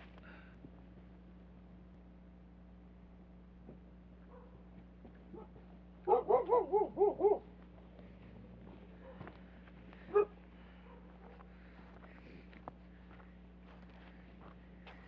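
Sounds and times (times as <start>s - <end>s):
dog barking: 4.3s - 4.6s, 5.3s - 7.5s, 9.0s - 9.4s, 10.1s - 11.4s.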